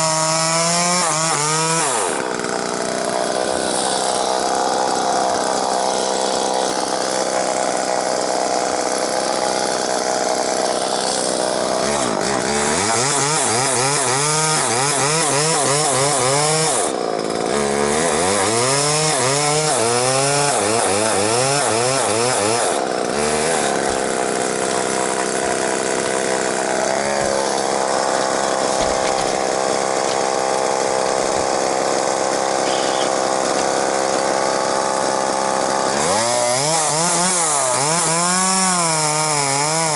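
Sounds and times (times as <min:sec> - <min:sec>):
chainsaw cutting wood: 0:00.0 - 0:39.9.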